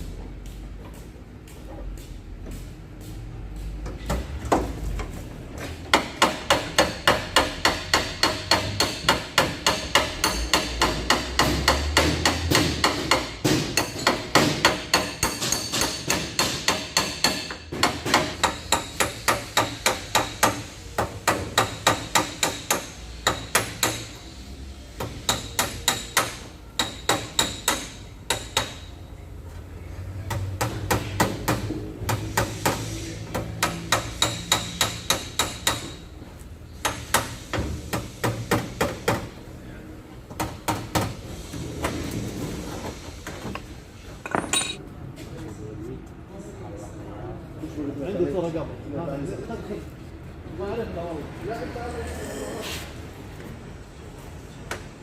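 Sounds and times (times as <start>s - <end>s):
hammer tapping sheet metal: 5.9s - 24.2s.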